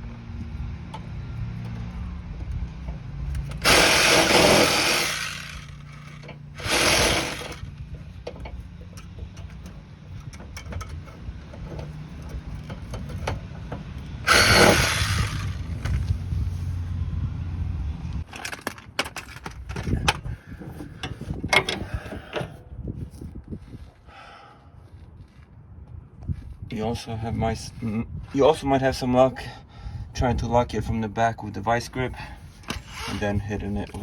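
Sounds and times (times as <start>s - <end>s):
power tool on a nut: 3.3s - 7.8s, 14.2s - 16.1s, 32.7s - 33.3s.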